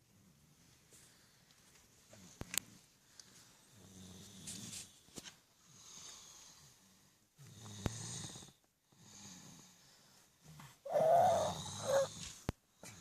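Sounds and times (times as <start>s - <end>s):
person snoring: 10.9s - 12.3s.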